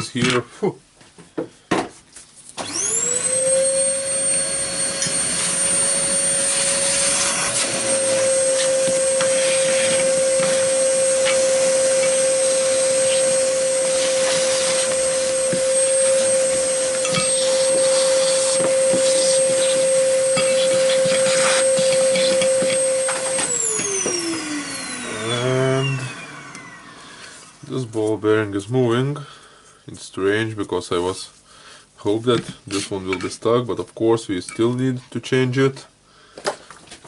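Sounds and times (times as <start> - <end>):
vacuum cleaner motor whine: 2.6 - 27.8.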